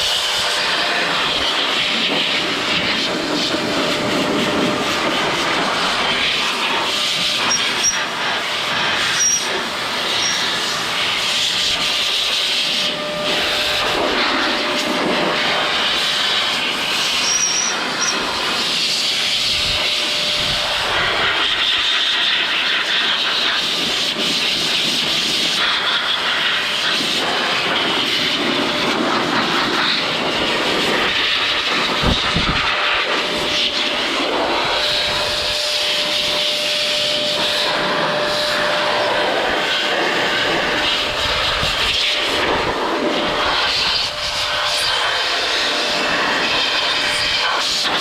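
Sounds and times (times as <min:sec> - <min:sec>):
electric air blower rushing: 0:00.0 - 0:48.0.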